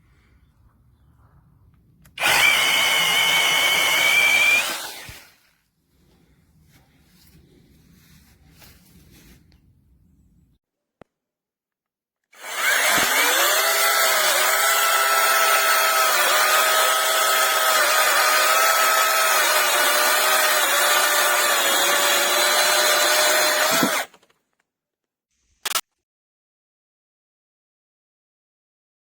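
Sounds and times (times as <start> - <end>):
electric chainsaw whine: 2.2 - 5.4, 12.4 - 24.2.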